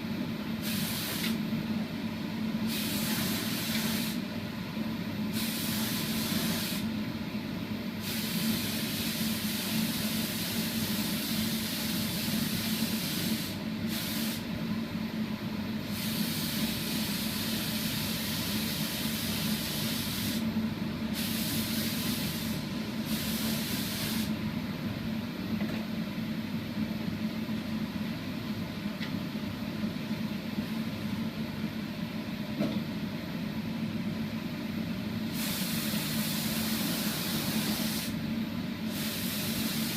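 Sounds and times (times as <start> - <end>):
workshop machinery hum: 0.0 - 39.9
spray gun hissing: 0.6 - 1.4, 2.7 - 4.2, 5.4 - 6.9, 8.0 - 14.4, 15.9 - 20.4, 21.2 - 24.4, 35.3 - 38.2, 38.9 - 39.9.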